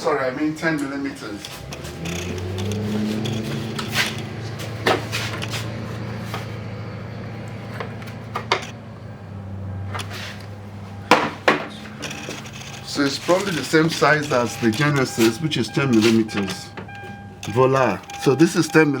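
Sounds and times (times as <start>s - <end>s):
sharp metal clicks and knocks: 1.4s - 5.5s, 7.6s - 8.8s, 11.1s - 15.2s.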